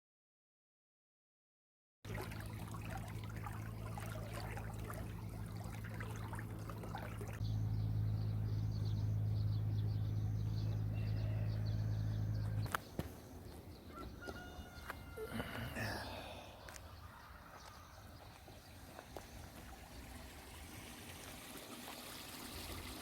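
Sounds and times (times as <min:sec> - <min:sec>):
water running and trickling: 0:02.1 - 0:07.4, 0:18.6 - 0:23.0.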